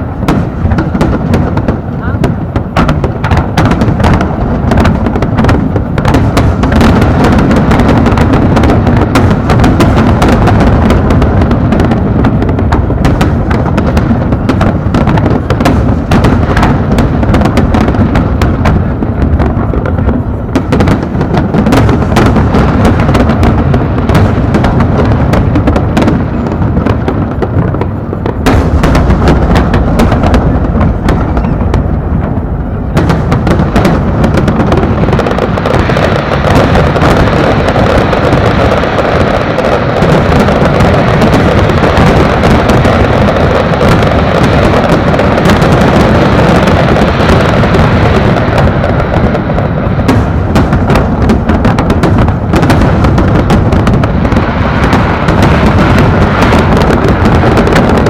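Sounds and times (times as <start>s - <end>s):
fireworks booms and crackles: 0.0s - 58.0s
heavy low rumble: 12.4s - 35.6s.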